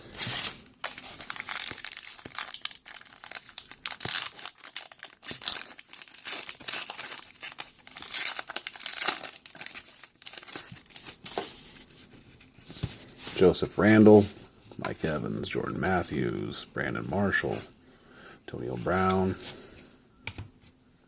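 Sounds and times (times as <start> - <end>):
wrapper crinkling and tearing: 0.3 - 11.2.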